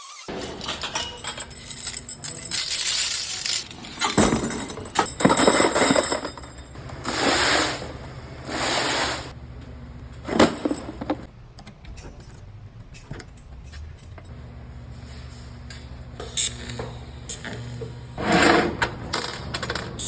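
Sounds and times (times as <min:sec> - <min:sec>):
metal clinking and rattling: 0:00.3 - 0:06.8.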